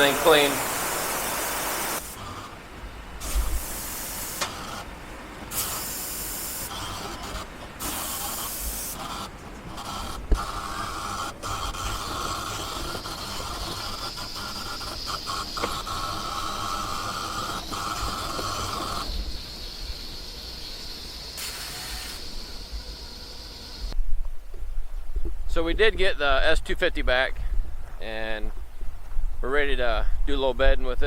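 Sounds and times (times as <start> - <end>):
steady machine whine: 0.0 - 4.9, 5.5 - 24.0
air hissing: 0.0 - 24.0.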